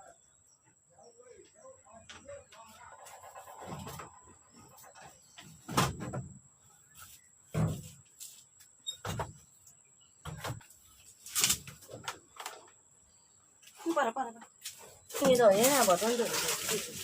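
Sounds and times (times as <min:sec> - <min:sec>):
knocks and thumps: 0:03.6 - 0:06.4, 0:07.5 - 0:08.0, 0:09.0 - 0:09.5, 0:10.2 - 0:10.8.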